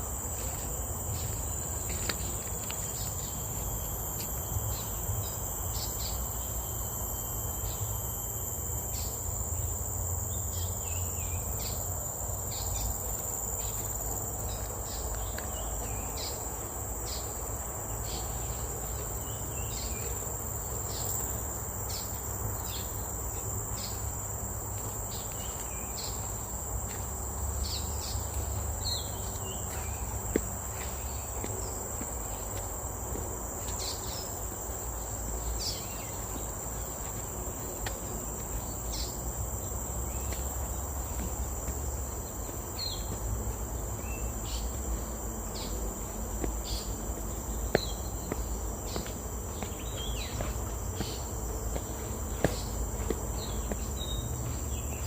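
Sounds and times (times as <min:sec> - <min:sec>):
high-pitched insect drone: 0:00.0 - 0:55.0.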